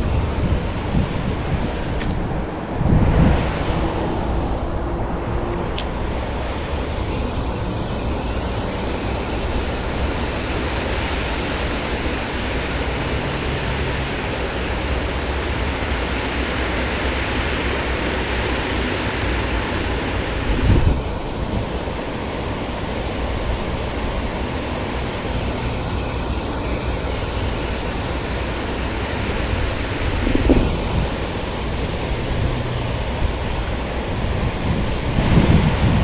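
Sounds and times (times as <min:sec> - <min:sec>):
flowing river water: 0:00.0 - 0:36.0
wind buffeting microphone: 0:00.0 - 0:36.0.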